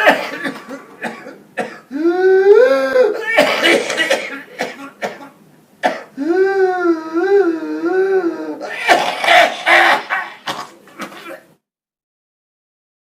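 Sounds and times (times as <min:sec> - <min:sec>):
person coughing harshly: 0:00.0 - 0:02.0, 0:02.9 - 0:06.2, 0:08.6 - 0:11.5.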